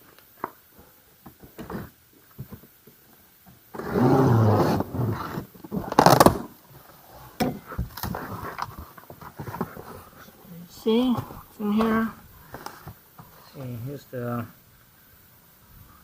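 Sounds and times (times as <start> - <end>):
sharp rip: 3.7 - 6.6.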